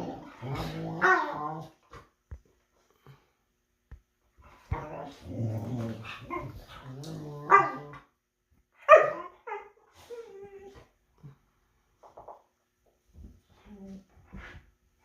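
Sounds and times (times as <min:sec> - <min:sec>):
dog growling: 0:00.0 - 0:01.8, 0:04.7 - 0:08.1
dog barking: 0:08.8 - 0:09.3.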